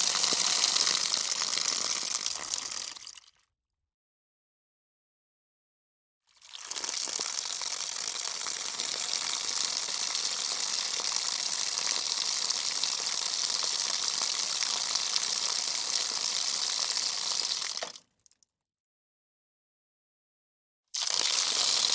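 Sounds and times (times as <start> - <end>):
water running from faucet: 0.0 - 3.3, 6.4 - 18.0, 21.0 - 21.9.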